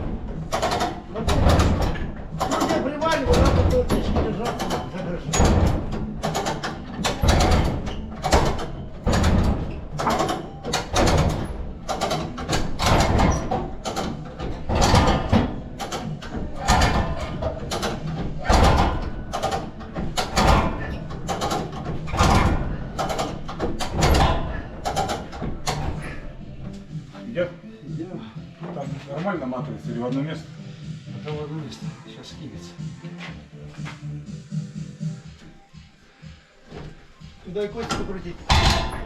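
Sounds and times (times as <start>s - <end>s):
hand winch ratcheting: 0.4s - 26.3s.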